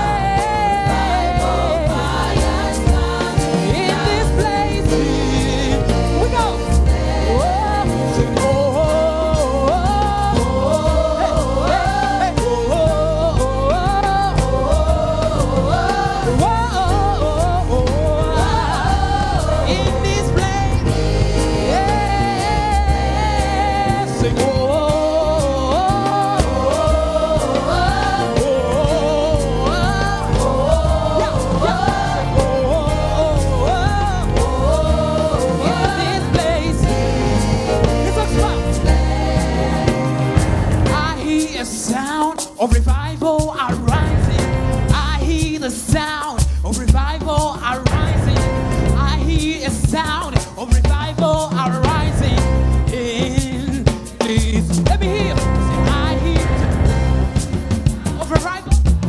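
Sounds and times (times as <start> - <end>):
heavy bass line: 0.0 - 41.8, 47.9 - 49.6, 54.9 - 58.4
cymbal-driven drums: 0.0 - 59.0
gospel choir singing: 0.0 - 59.0.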